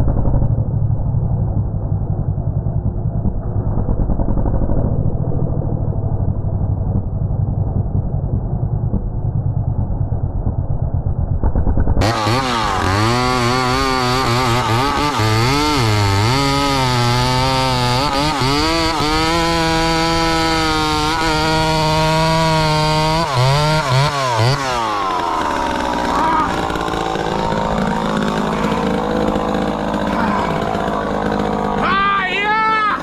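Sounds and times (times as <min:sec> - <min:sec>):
muffled low rumble: 0:00.0 - 0:12.0
chainsaw engine revving: 0:12.0 - 0:33.0.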